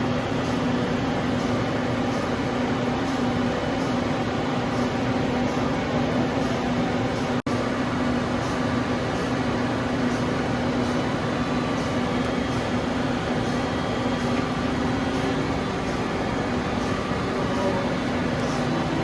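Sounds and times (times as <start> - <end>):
lathe mechanical hum: 0.0 - 19.0.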